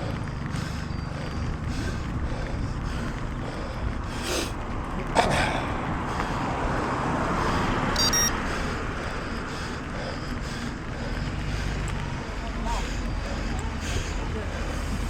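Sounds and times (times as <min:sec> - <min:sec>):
vehicle passing: 0:00.0 - 0:15.0
wind and road noise: 0:00.0 - 0:15.0
brief high-pitched beep: 0:08.0 - 0:08.4.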